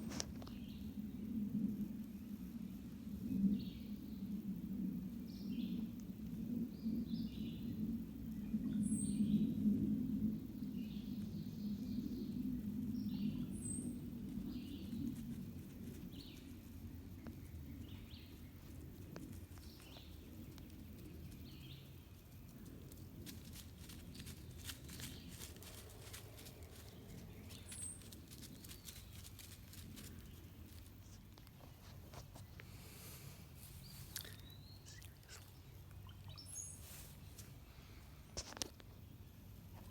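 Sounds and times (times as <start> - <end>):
crackling and rustling in leaves: 0.0 - 39.9.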